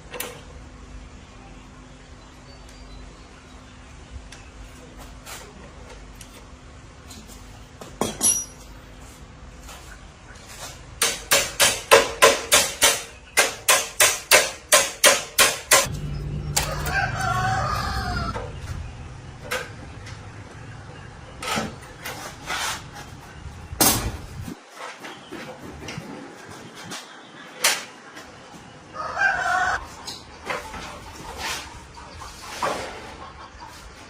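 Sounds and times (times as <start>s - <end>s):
rooster crowing: 16.4s - 18.4s, 28.9s - 29.8s.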